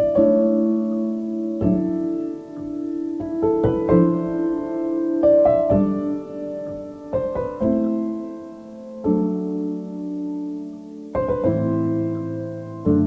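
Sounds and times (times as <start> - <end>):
soft piano chords: 0.0 - 13.0.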